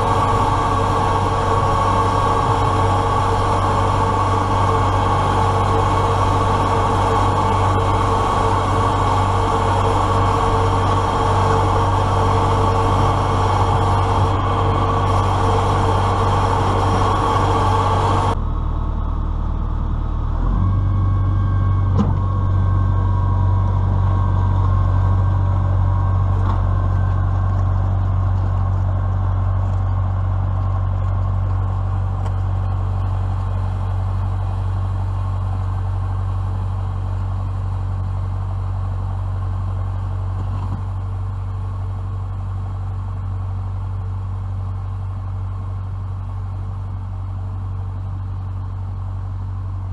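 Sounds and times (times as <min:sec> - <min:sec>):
tractor diesel engine running: 0:00.0 - 0:49.9.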